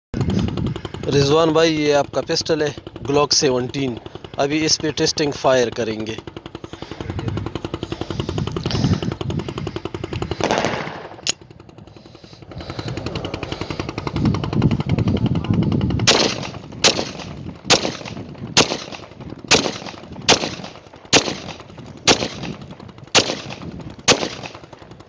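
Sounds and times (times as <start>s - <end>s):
pistol shots: 10.4s - 11.2s, 16.1s - 24.6s.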